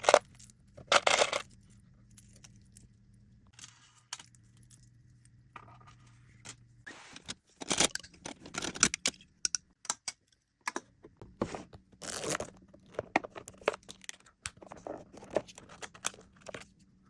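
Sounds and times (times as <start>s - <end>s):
clicks and taps of objects: 8.3s - 11.3s.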